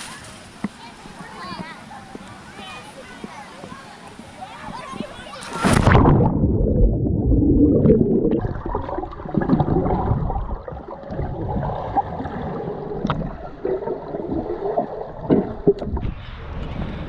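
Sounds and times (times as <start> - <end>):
pool water sloshing and gurgling: 4.4 - 17.0
small splashes: 5.3 - 6.5.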